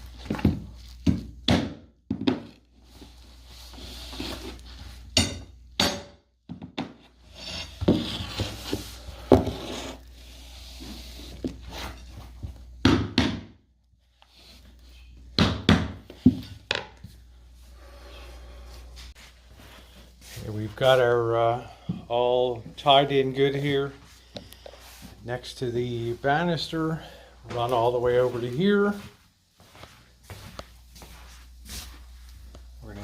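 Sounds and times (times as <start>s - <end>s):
scraping of planks: 7.3s - 10.0s.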